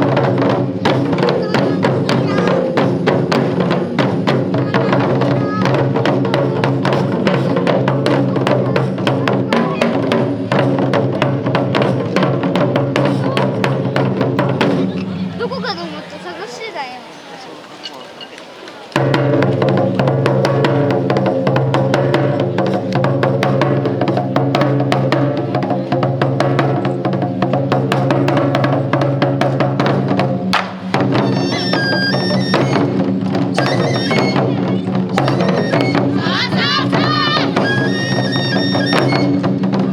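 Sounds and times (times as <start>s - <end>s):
taiko drums playing: 0.0s - 16.4s, 19.0s - 39.9s
high melody line: 31.1s - 39.5s.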